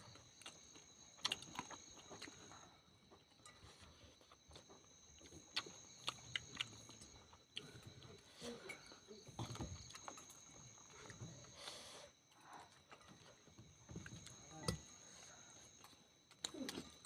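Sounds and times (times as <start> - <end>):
high insect trill: 0.0 - 17.0
person chewing with mouth clicks: 5.2 - 7.9.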